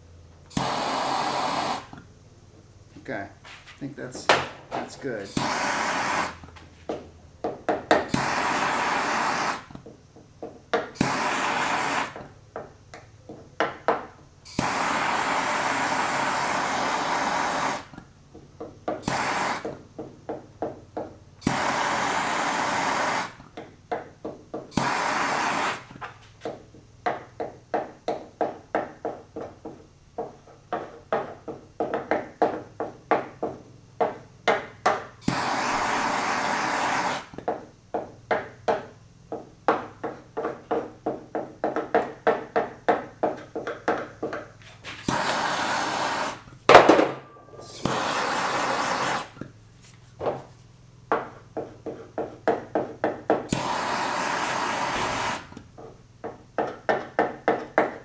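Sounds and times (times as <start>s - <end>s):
gas torch hissing: 0.4s - 10.1s, 10.8s - 18.3s, 18.9s - 20.7s, 21.3s - 28.3s, 31.4s - 37.7s, 44.4s - 50.4s, 53.4s - 55.8s.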